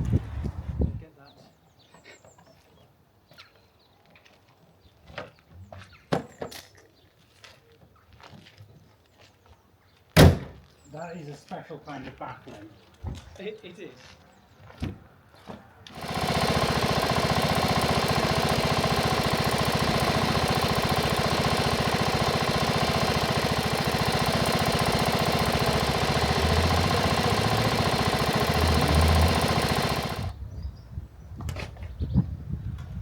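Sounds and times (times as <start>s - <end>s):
ride-on lawn mower engine running: 15.9s - 30.4s.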